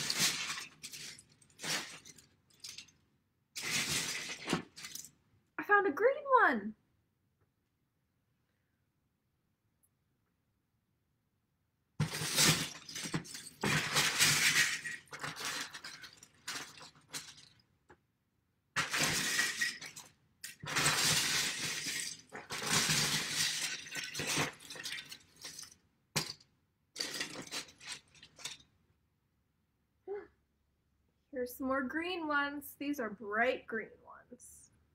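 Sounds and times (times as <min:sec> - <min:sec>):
plastic bricks clattering: 0:00.0 - 0:03.0, 0:03.6 - 0:05.1, 0:12.0 - 0:17.7, 0:18.8 - 0:28.7.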